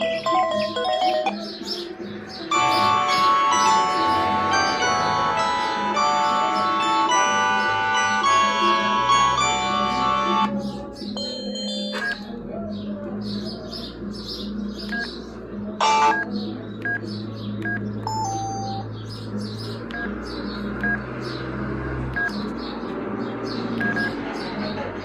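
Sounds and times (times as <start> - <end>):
phone keypad beeps: 23.8 - 24.2.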